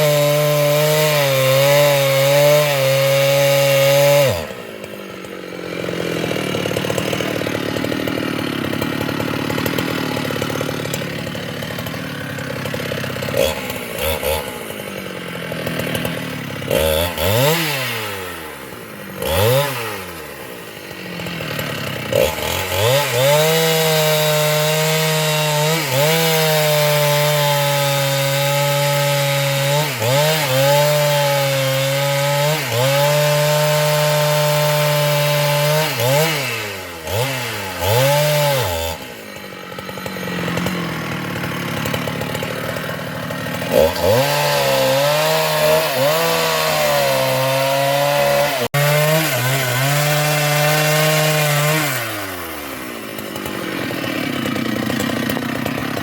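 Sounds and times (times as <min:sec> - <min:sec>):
chainsaw cutting wood: 0:00.0 - 0:56.0.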